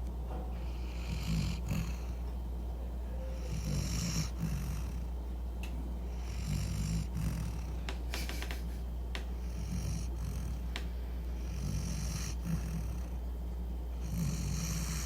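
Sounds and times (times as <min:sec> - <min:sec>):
low steady hum: 0:00.0 - 0:15.0
dog snoring: 0:00.6 - 0:02.3, 0:03.1 - 0:05.1, 0:06.1 - 0:08.6, 0:09.4 - 0:10.8, 0:11.4 - 0:13.2, 0:14.0 - 0:15.0.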